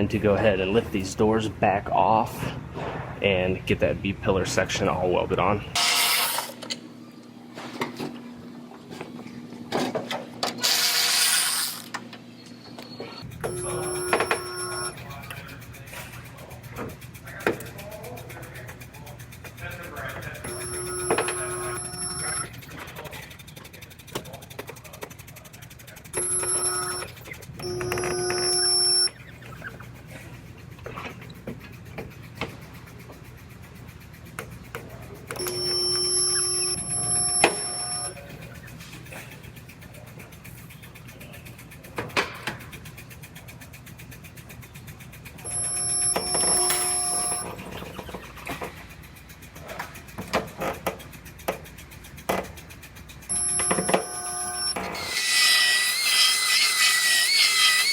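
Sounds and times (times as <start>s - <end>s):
power tool whining: 13.4s - 15.0s, 20.5s - 22.5s, 26.2s - 29.1s, 35.4s - 38.2s, 45.4s - 47.5s, 53.3s - 57.9s.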